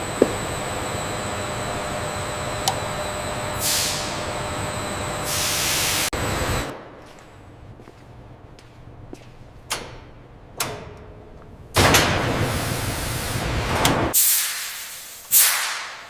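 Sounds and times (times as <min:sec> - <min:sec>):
factory machinery noise: 0:00.0 - 0:16.0
pneumatic air hiss: 0:03.6 - 0:04.2, 0:05.2 - 0:06.1, 0:14.2 - 0:16.0.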